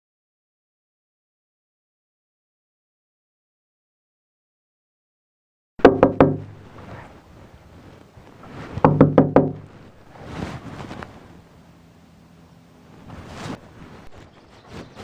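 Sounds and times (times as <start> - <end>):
knocking on a door: 5.8 - 6.9, 8.8 - 9.9.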